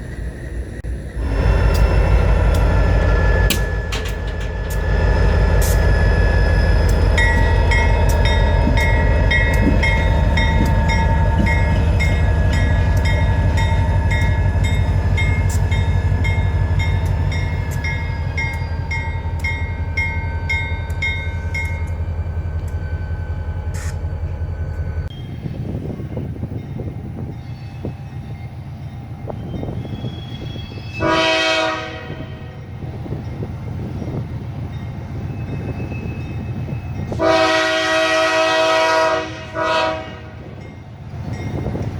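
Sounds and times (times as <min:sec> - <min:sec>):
locomotive engine rumble: 0:00.0 - 0:41.9
locomotive horn blast: 0:31.0 - 0:32.7, 0:37.0 - 0:40.6.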